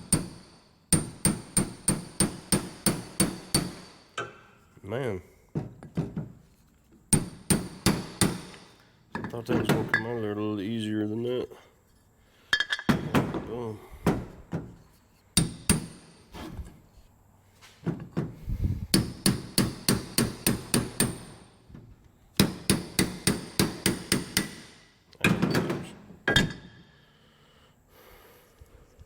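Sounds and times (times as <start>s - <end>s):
hammer striking metal: 0.0s - 4.4s, 7.1s - 8.8s, 15.4s - 16.3s, 18.9s - 21.4s, 22.4s - 24.8s.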